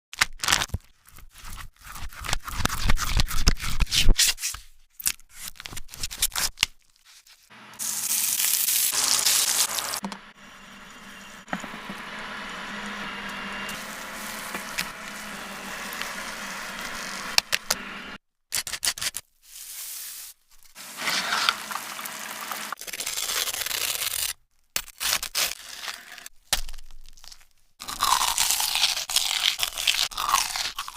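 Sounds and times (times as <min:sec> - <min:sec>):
frying hiss: 0:07.7 - 0:18.2, 0:19.4 - 0:22.8
food crunching: 0:27.1 - 0:30.9.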